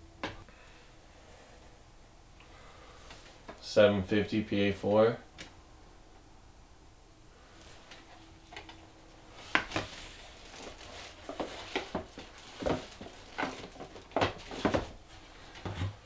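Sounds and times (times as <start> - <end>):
plastic discs clacking: 9.4 - 15.0.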